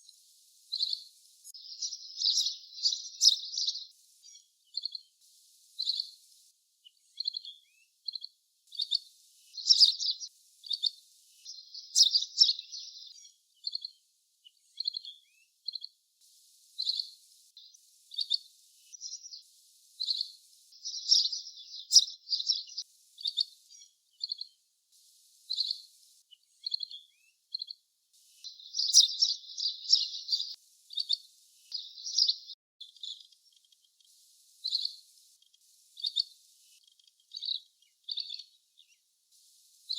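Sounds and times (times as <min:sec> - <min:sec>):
bird calling with trills: 0:01.6 - 0:03.9, 0:09.6 - 0:10.3, 0:11.5 - 0:13.2, 0:20.8 - 0:22.8, 0:28.5 - 0:30.6, 0:31.8 - 0:32.5.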